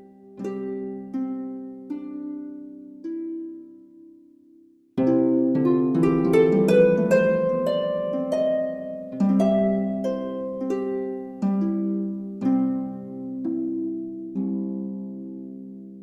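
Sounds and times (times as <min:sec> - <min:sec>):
plucked strings music: 0:05.0 - 0:16.0.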